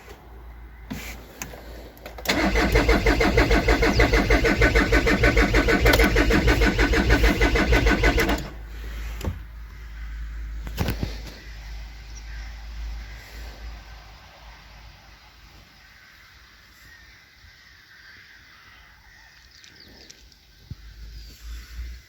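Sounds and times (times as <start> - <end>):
engine cranking on starter: 2.2 - 8.7.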